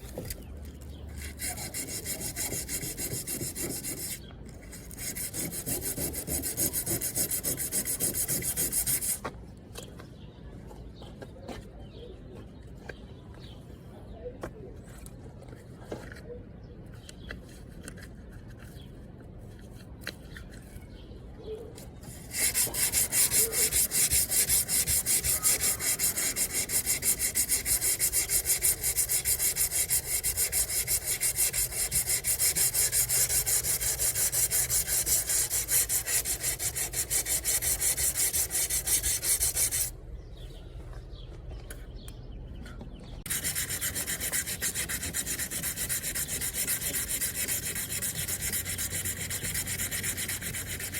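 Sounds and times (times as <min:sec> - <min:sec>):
sanding a car body panel: 0:01.2 - 0:09.2, 0:22.1 - 0:39.9, 0:43.3 - 0:50.9.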